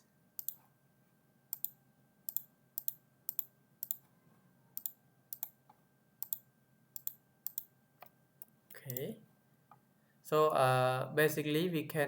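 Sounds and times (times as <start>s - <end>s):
keyboard and mouse clicks: 0.4s - 0.6s, 1.5s - 4.1s, 4.8s - 6.4s, 7.0s - 9.1s.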